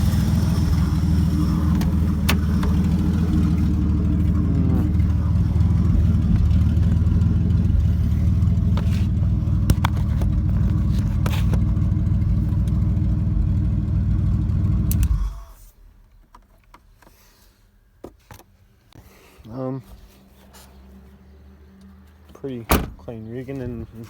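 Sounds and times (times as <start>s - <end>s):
car engine at high revs: 0.0s - 15.5s
sharp clicks and knocks: 8.7s - 11.8s.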